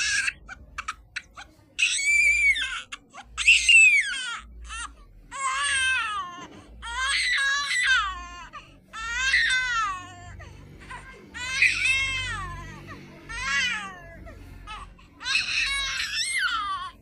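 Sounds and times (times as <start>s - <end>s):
high-pitched wailing cries: 0.0s - 17.0s.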